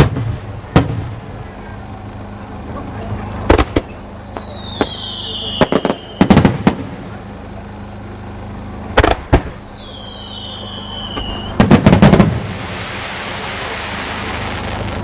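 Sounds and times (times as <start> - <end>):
firework bursts and bangs: 0.0 - 15.0
steady hiss: 0.0 - 15.0
falling firework whistle: 3.5 - 6.8, 9.0 - 15.0.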